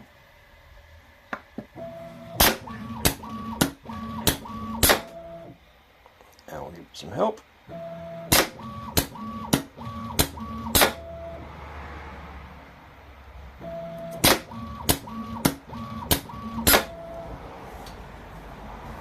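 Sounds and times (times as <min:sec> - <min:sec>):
pneumatic cylinder clacks: 0:08.3 - 0:11.0, 0:14.1 - 0:17.0.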